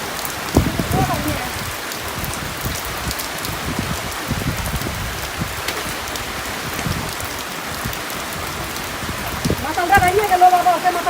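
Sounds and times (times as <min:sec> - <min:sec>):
heavy rain falling: 0:00.0 - 0:11.0
raindrop hits close by: 0:00.0 - 0:11.0.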